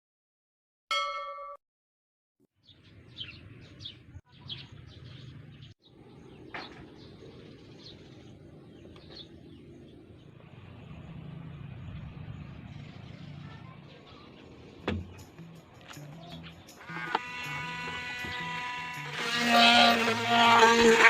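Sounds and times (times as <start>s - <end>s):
birds chirping: 2.6s - 20.6s
low outdoor background hum: 2.8s - 20.5s.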